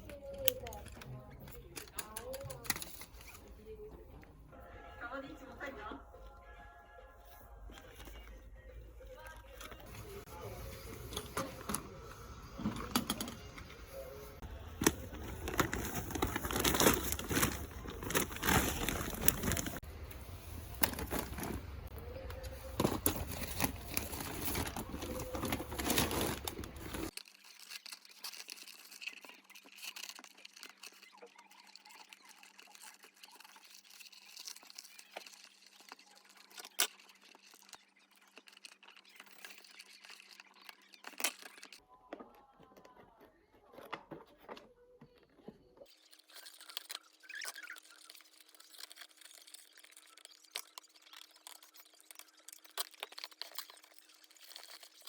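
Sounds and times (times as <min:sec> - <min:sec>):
paper crinkling and rustling: 0:00.0 - 0:03.8, 0:09.2 - 0:55.0.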